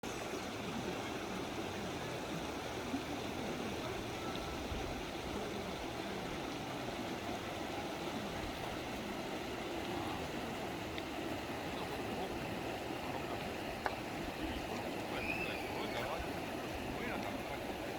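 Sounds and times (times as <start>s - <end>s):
stream water running: 0.0s - 17.9s.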